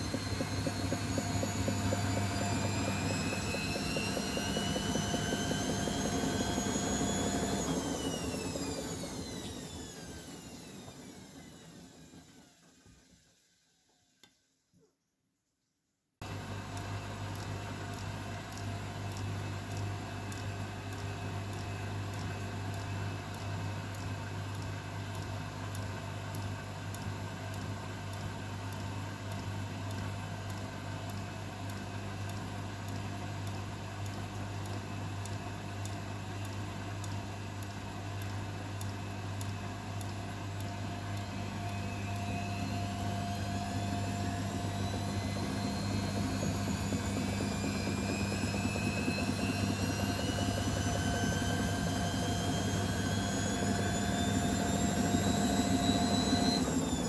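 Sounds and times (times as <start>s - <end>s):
motor whine rising in pitch: 0.0s - 12.6s, 41.0s - 57.0s
washing machine humming: 0.0s - 13.2s, 16.2s - 57.0s.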